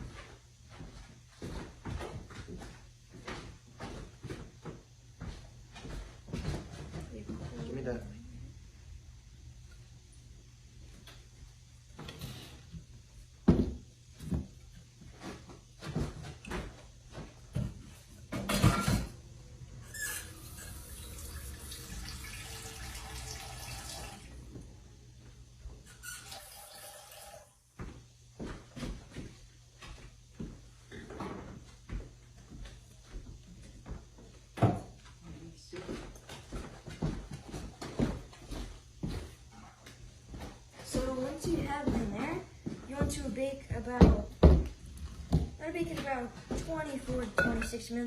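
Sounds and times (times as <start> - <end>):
cookware and utensils clattering: 18.3 - 19.2, 47.4 - 47.8
tap water running: 19.9 - 24.5, 25.8 - 27.6
utensils knocking and scraping bowl: 47.4 - 47.8.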